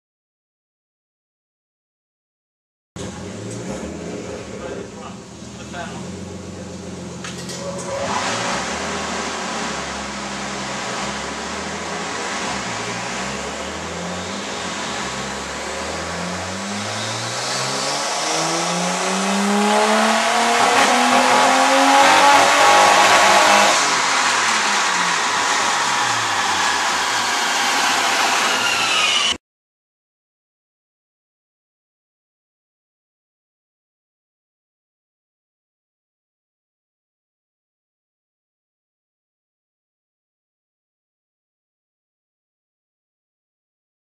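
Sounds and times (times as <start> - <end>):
turbocharged car engine revving: 3.0 - 29.4.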